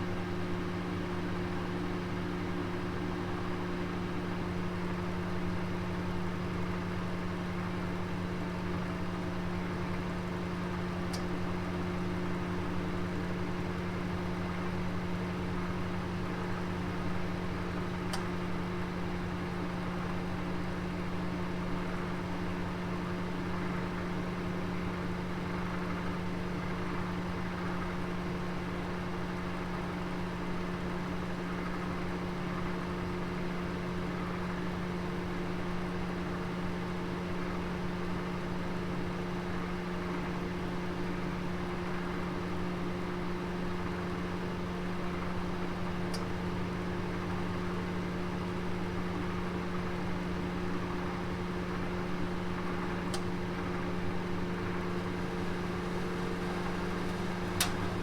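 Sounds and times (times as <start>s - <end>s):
oven humming: 7.5s - 27.9s, 41.4s - 58.0s.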